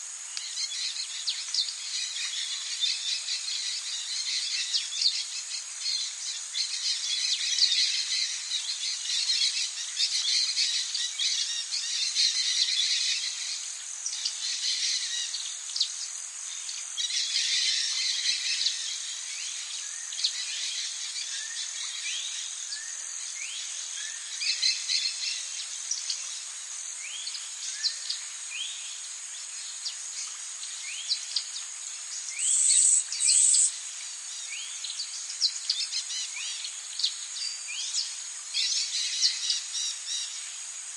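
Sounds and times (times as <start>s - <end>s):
high-pitched insect drone: 9.1s - 40.7s.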